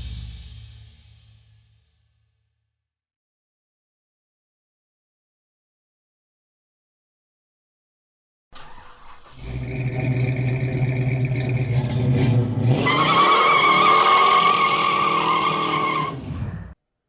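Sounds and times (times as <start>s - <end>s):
tyres squealing: 8.6s - 16.3s
car engine revving: 8.8s - 16.7s.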